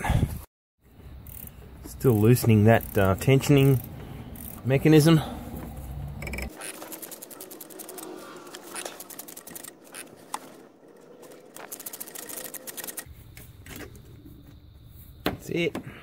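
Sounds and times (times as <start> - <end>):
ratchet spanner clicking: 1.2 - 5.0, 6.1 - 10.1, 11.6 - 13.1.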